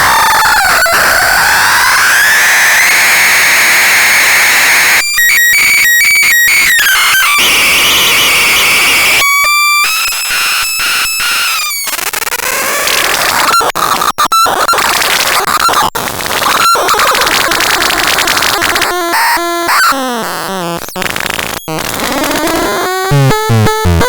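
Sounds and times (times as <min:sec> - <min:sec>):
harsh electronic noise with whistling: 0:00.0 - 0:24.0
steady high electronic tone: 0:22.0 - 0:24.0.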